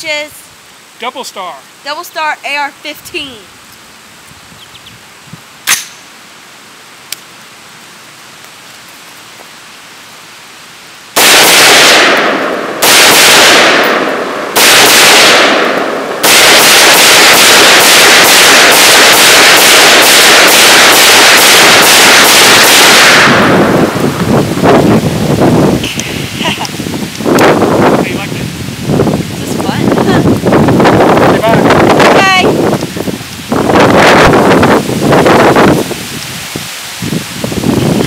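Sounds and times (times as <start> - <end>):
rifle shots with echo: 11.2 - 24.0.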